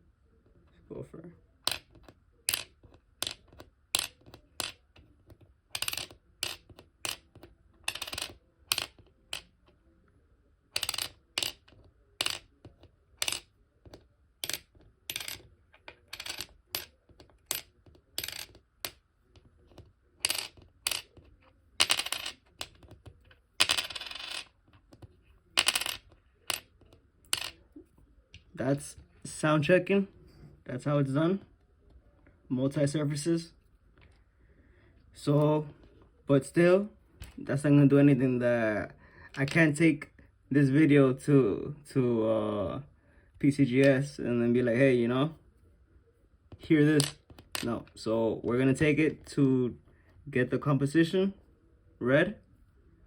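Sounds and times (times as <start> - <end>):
coins dropping with metallic clink: 1.6 - 4.8, 5.7 - 9.5, 10.8 - 12.5, 13.2 - 13.5, 14.4 - 19.0, 20.2 - 23.0, 23.6 - 25.0, 25.6 - 26.7, 27.3 - 27.6
coins spinning or bouncing: 1.6 - 9.5, 10.7 - 19.0, 19.7 - 27.7, 46.6 - 47.8.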